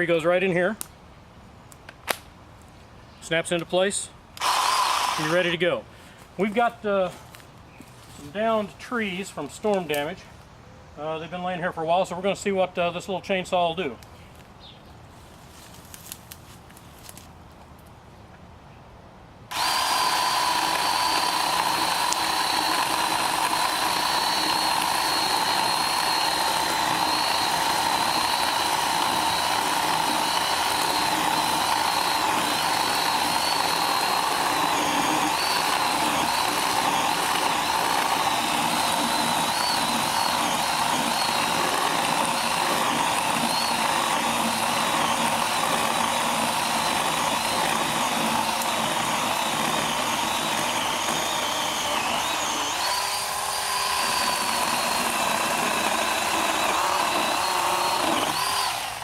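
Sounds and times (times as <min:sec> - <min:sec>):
battery chainsaw cutting log: 0:04.4 - 0:05.7, 0:19.5 - 0:59.0.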